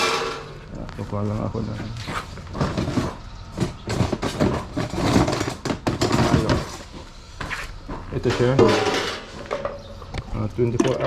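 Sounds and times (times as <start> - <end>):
kitchenware knocking and clattering: 2.6 - 6.8, 8.2 - 10.0.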